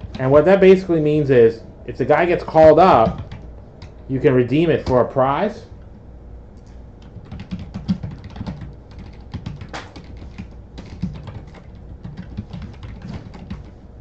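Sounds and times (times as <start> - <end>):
typing on computer keyboard: 2.9 - 3.9, 7.0 - 13.8.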